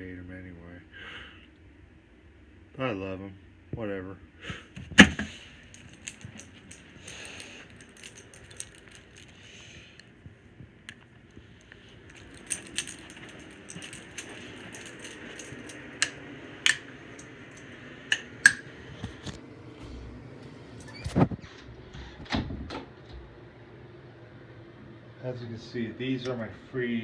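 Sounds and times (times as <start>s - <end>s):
metal lighters clinking: 5.2s - 10.1s, 10.9s - 18.6s.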